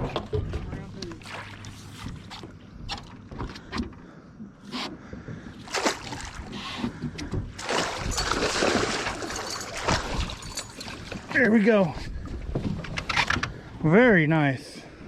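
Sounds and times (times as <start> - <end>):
knocks and bumps on boat: 0.0 - 1.2, 5.0 - 13.6.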